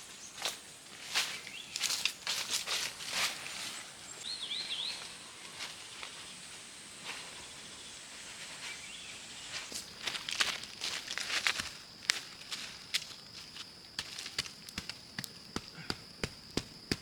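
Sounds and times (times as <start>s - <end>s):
rustles on the ground: 0.4s - 17.0s.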